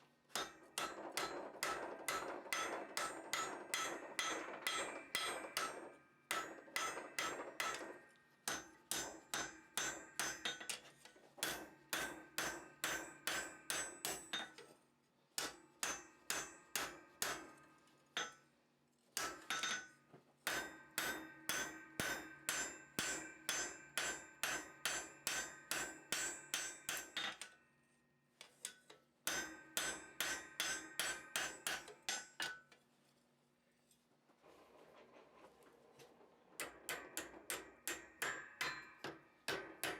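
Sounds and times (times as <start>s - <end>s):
hammer striking metal on anvil: 0.4s - 10.8s, 11.4s - 14.6s, 15.4s - 17.6s, 19.2s - 19.9s, 20.5s - 27.6s, 29.2s - 32.6s, 36.6s - 39.9s.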